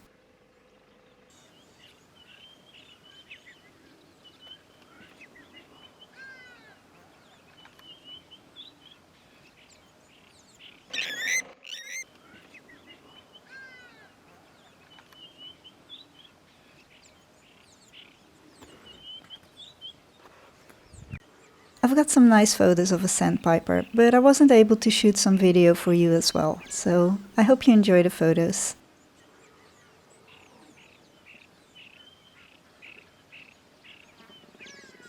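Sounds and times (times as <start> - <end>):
birds chirping: 10.9 - 12.0, 21.8 - 28.8
falling whistled bird notes: 10.9 - 12.0.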